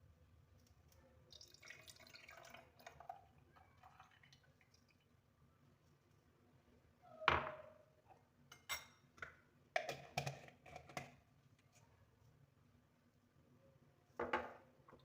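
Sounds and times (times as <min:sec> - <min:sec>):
kitchenware knocking and clinking: 0:09.8 - 0:11.2, 0:14.2 - 0:14.6.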